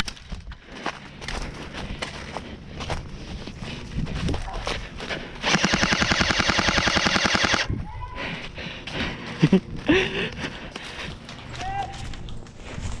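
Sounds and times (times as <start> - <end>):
airsoft gun automatic fire: 5.4 - 7.7.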